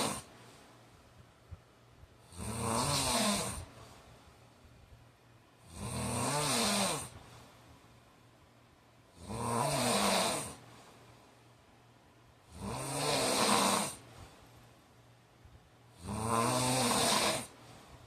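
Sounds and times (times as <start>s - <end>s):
man snoring: 0.0s - 0.3s, 2.2s - 3.7s, 5.6s - 7.2s, 9.1s - 10.6s, 12.4s - 14.1s, 15.9s - 17.6s.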